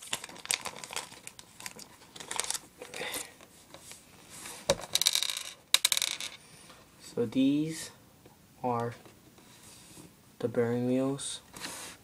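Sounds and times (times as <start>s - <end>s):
plastic packaging crinkling: 0.0s - 3.3s.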